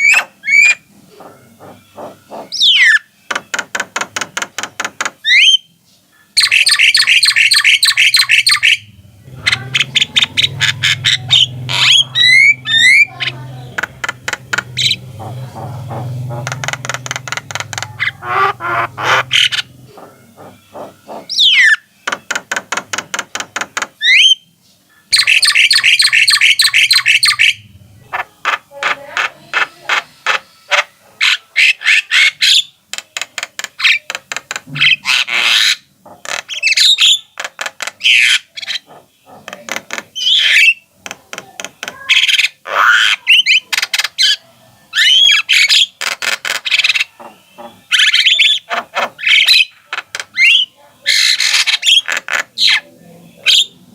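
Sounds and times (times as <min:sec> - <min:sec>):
bird squawks: 0:00.0 - 0:03.1, 0:06.4 - 0:21.9, 0:25.0 - 0:32.7, 0:34.8 - 0:37.3, 0:42.0 - 0:44.4, 0:45.0 - 0:53.8
bird singing and chattering: 0:00.0 - 0:53.8.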